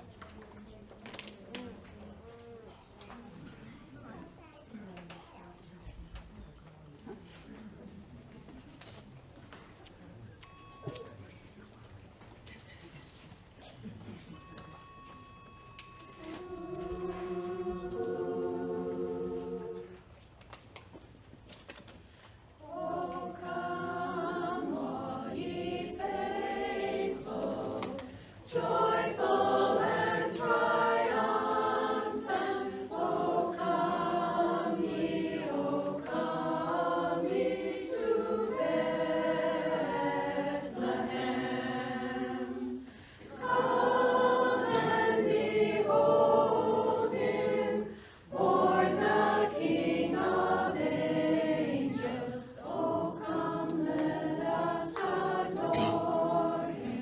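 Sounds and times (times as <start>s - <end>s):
women's chorus singing a cappella: 16.1s - 20.2s, 22.5s - 57.0s.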